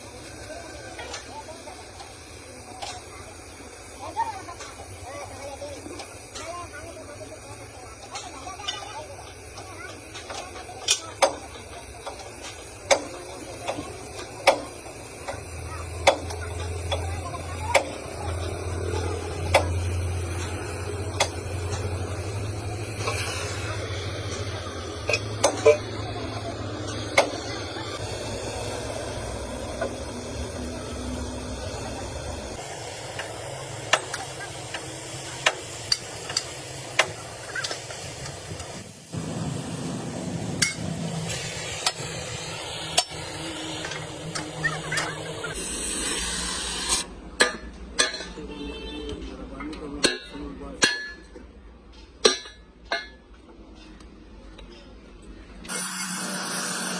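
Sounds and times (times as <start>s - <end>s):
low machine hum: 13.2s - 45.6s.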